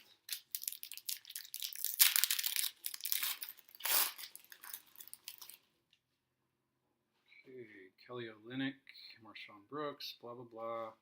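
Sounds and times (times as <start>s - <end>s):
foil wrapper tearing and crinkling: 0.0s - 5.6s.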